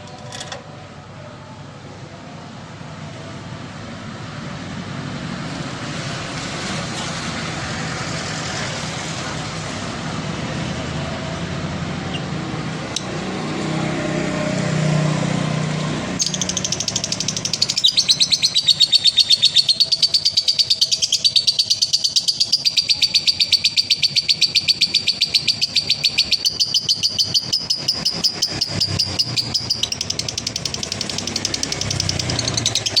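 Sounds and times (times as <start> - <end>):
lovebird chattering trill: 16.2 - 33.0.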